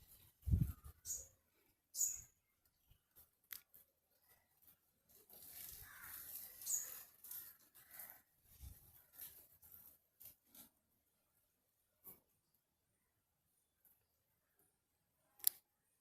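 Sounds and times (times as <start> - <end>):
small birds chirping: 0.0 - 10.0
soft rustle: 3.0 - 11.0.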